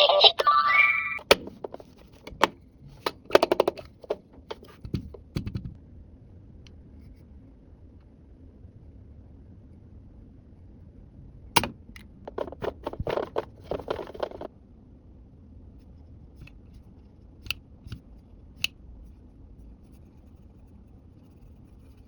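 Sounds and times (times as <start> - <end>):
plastic toy pieces clicking: 12.3 - 14.5.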